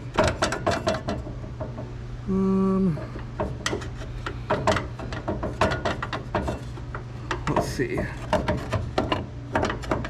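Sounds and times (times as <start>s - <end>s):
hum dropping in pitch: 2.2s - 3.2s.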